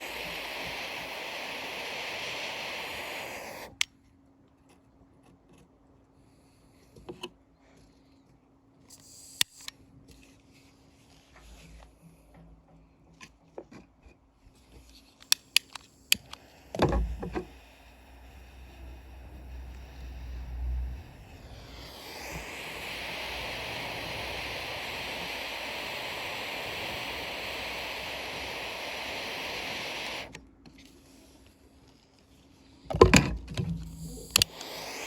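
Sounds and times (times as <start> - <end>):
hot air gun hissing: 0.0 - 3.9, 15.2 - 30.4, 33.8 - 35.0.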